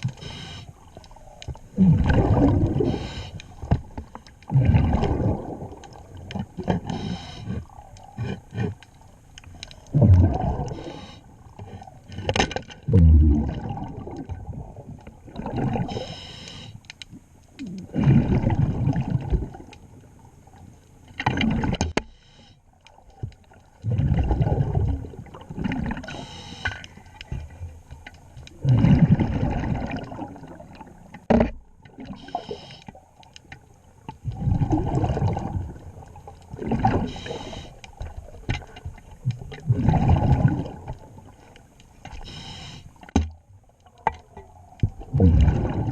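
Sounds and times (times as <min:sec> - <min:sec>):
regulator hissing inhalations: 0:00.2 - 0:00.7, 0:06.9 - 0:08.4, 0:15.9 - 0:16.8, 0:26.1 - 0:26.8, 0:32.2 - 0:32.9, 0:37.1 - 0:37.8, 0:42.2 - 0:43.0
gurgling exhaled bubbles: 0:01.1 - 0:03.2, 0:04.5 - 0:08.4, 0:09.9 - 0:11.5, 0:12.8 - 0:16.0, 0:17.6 - 0:19.7, 0:23.8 - 0:26.2, 0:28.5 - 0:31.1, 0:34.2 - 0:38.4, 0:39.2 - 0:41.4, 0:44.9 - 0:45.9.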